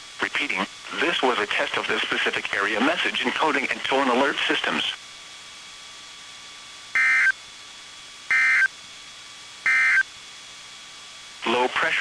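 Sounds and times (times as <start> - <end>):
faint receiver hiss and hum: 0.0 - 5.3, 11.0 - 12.0
buzzing digital tone bursts: 7.0 - 7.3, 8.3 - 8.7, 9.7 - 10.0.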